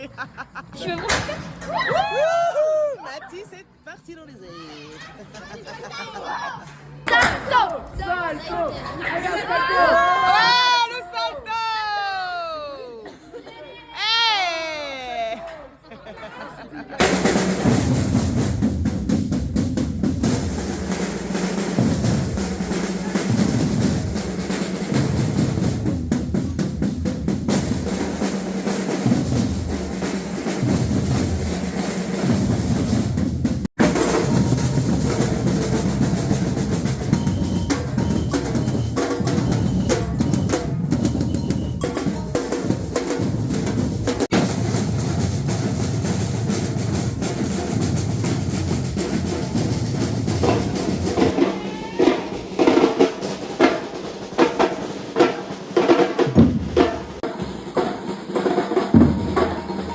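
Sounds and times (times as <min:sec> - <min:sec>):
bass drums pounding: 0:17.0 - 0:51.4
snare drums rattling: 0:17.0 - 0:59.9
hand percussion: 0:33.8 - 0:44.3.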